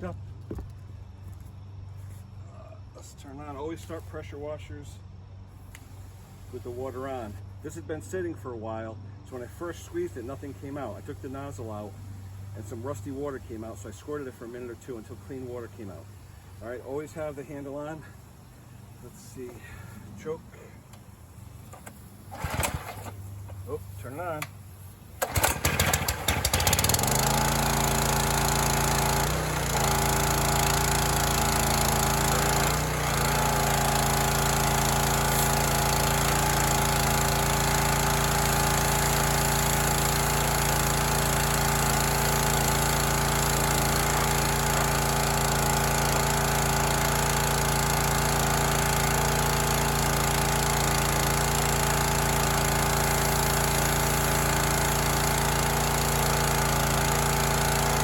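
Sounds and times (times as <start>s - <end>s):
pressure washer engine running: 2.0s - 8.4s, 9.3s - 58.0s
recoil starter pull: 21.6s - 24.6s, 25.2s - 58.0s.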